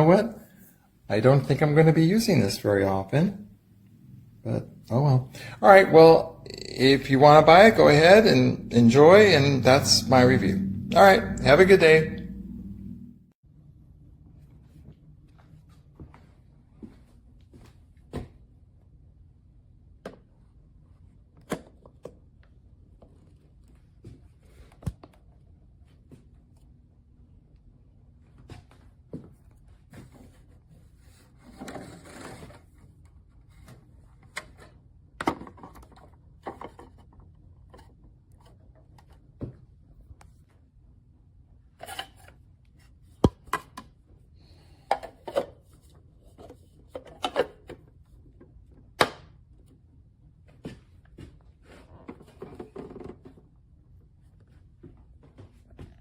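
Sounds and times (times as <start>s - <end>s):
low steady hum: 0.0s - 15.5s.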